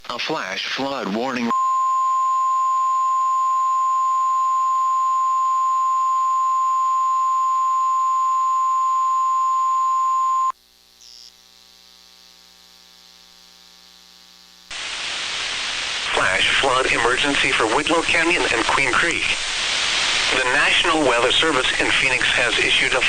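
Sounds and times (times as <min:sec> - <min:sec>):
steady alarm beep: 0:01.5 - 0:10.5
faint radio hiss: 0:10.6 - 0:23.0.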